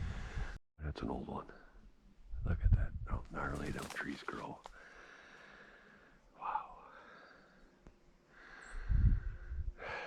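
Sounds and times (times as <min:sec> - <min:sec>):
wind buffeting microphone: 0:02.3 - 0:03.8, 0:08.8 - 0:09.8.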